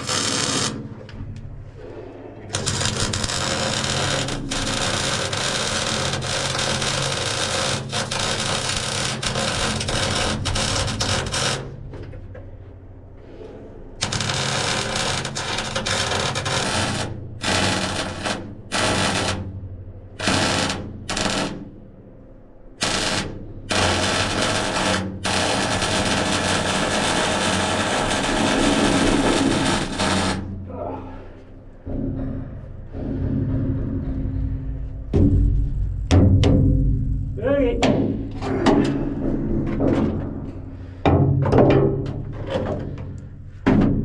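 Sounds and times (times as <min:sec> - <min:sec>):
welding arc crackling: 0:00.0 - 0:01.0, 0:02.5 - 0:11.8, 0:14.0 - 0:19.5, 0:20.2 - 0:21.8, 0:22.8 - 0:30.6.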